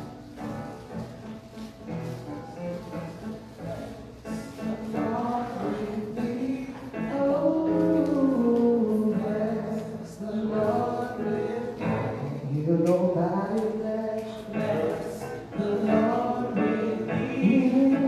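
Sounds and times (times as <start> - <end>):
gospel singing with accompaniment: 3.6 - 18.0.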